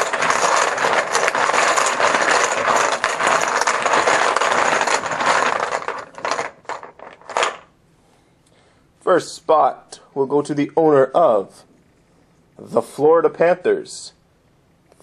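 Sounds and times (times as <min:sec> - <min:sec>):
poker chips clattering: 0:00.0 - 0:07.7.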